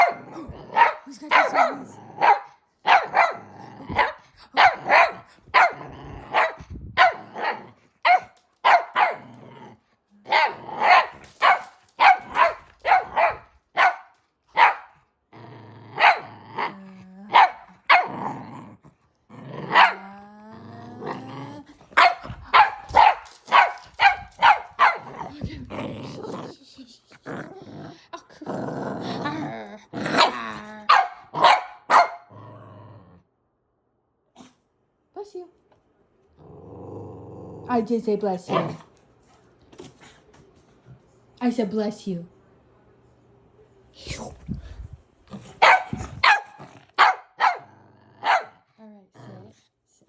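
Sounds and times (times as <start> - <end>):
dog barking: 0.0 - 9.3, 10.3 - 15.0, 16.0 - 16.7, 17.3 - 18.2, 19.7 - 20.1, 22.0 - 25.2, 30.2 - 32.3, 38.5 - 38.9, 45.6 - 48.6.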